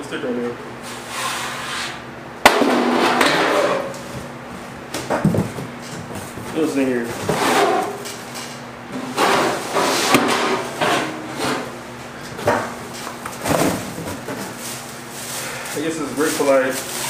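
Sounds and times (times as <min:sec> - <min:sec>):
cardboard rustling and scraping: 0:13.3 - 0:17.0.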